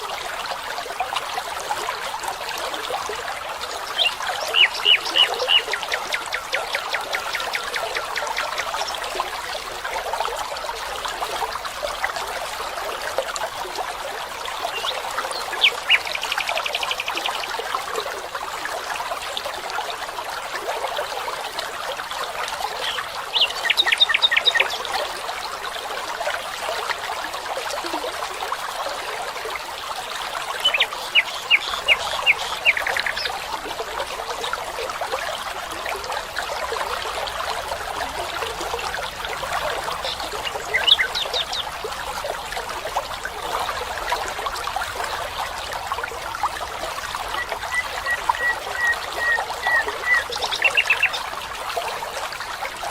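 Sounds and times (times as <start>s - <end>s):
water trickling: 0.0s - 52.9s.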